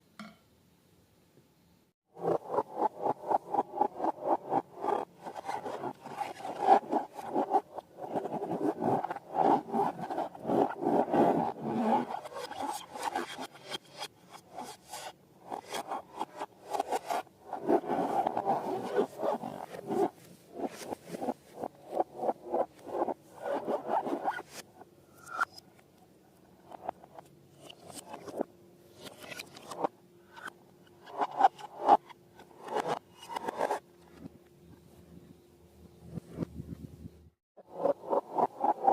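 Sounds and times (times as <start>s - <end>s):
rubbery scraping of balloons: 2.2s - 24.6s.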